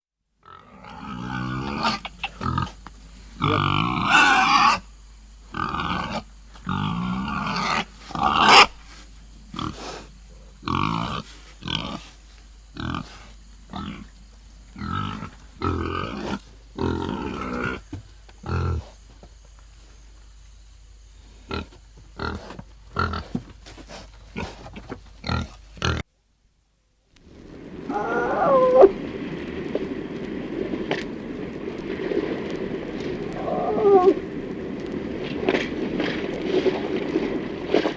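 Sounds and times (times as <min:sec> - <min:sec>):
farm animal calling: 0:00.4 - 0:04.9, 0:05.5 - 0:08.9, 0:27.9 - 0:29.0, 0:33.3 - 0:34.2.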